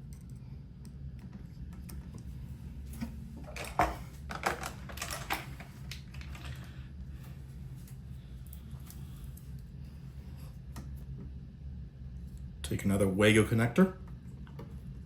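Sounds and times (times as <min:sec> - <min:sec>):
electrical wires clicking and rattling: 0:00.0 - 0:09.8.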